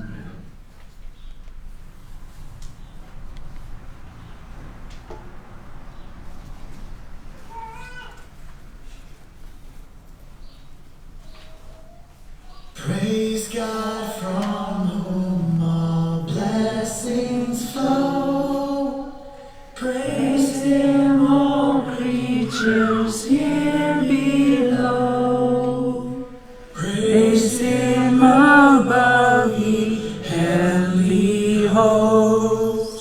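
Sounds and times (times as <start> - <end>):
choir singing a hymn: 12.8 - 33.0.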